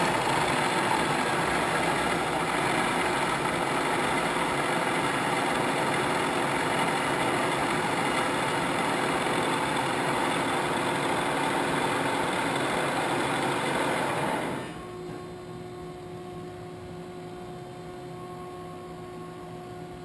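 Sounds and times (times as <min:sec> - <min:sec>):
machining center spindle running: 0:00.0 - 0:14.9.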